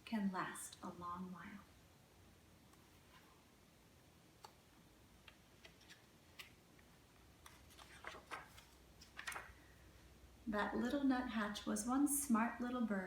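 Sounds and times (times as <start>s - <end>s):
page rustle: 5.6s - 6.6s, 7.4s - 9.6s
book pages clicking: 7.4s - 9.5s.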